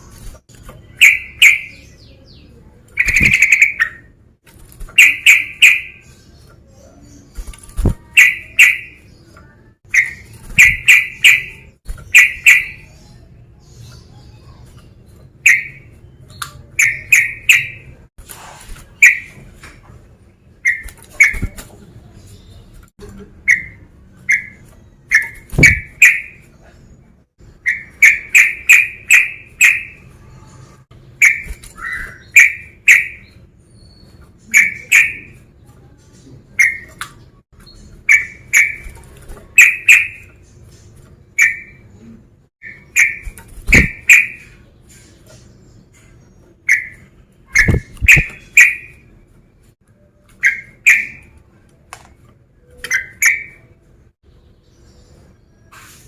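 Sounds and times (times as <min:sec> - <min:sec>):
bird calling bright notes: 0:07.8 - 0:09.1, 0:50.4 - 0:51.4.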